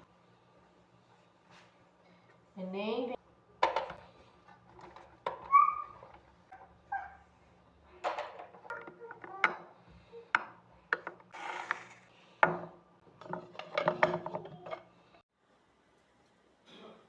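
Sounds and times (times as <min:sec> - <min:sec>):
objects clicking and knocking: 0:08.0 - 0:15.0.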